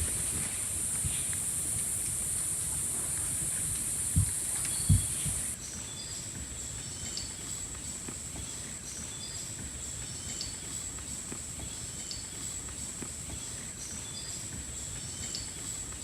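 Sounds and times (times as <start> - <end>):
high-pitched insect drone: 0.0 - 5.6
loud high insect buzz: 0.0 - 5.6
short chirping calls: 0.0 - 5.6.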